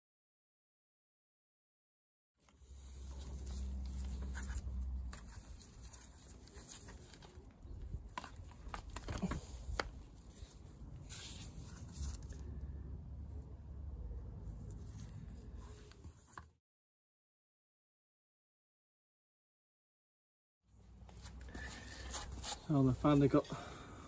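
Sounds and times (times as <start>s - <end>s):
light scraping and handling: 2.5s - 12.6s, 21.0s - 23.6s
low steady hum: 2.5s - 16.2s.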